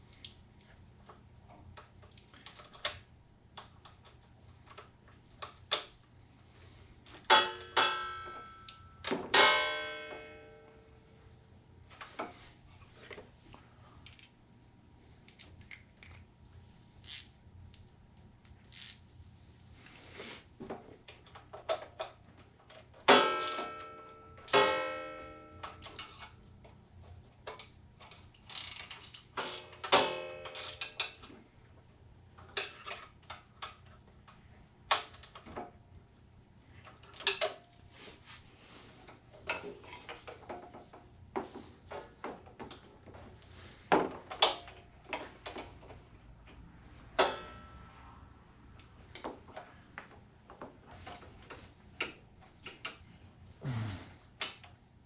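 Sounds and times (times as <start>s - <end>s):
tools clicking and tapping: 27.4s - 31.4s, 36.9s - 37.7s.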